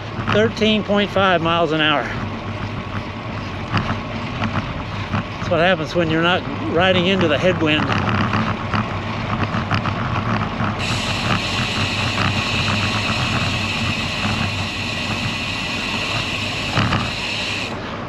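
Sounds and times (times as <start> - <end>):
bicycle tyres rolling hum: 0.0 - 18.0
loud high hiss: 10.8 - 17.8.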